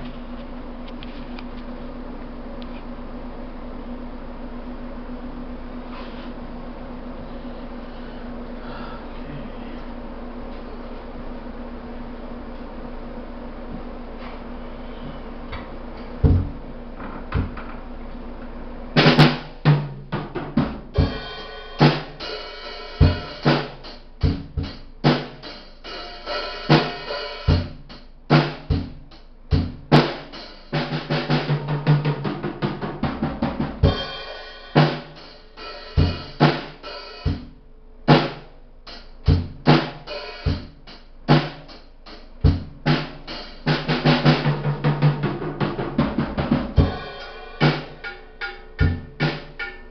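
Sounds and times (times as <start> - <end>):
drum beat on bass and snare: 16.2 - 16.6, 19.0 - 49.9
bass drum kicks: 16.2 - 17.7, 24.2 - 25.2, 27.5 - 30.2, 37.3 - 38.4, 39.3 - 41.6, 42.4 - 47.8
ringing cymbals: 21.0 - 24.0, 25.4 - 27.5, 33.9 - 37.4, 46.8 - 49.9.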